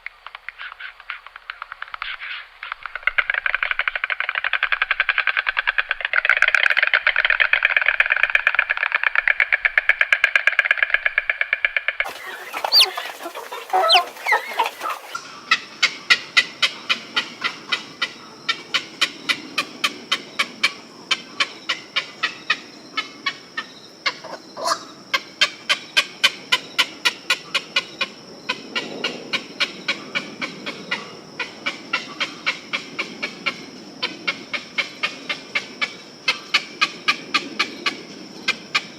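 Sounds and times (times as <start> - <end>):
flock of birds calling: 12.1 - 15.2
gliding bird calls: 12.1 - 15.2
chickens clucking: 12.1 - 17.9.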